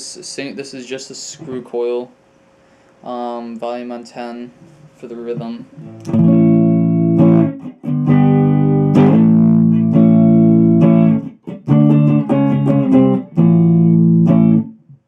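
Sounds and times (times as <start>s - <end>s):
electric guitar strummed chords: 5.3s - 15.0s.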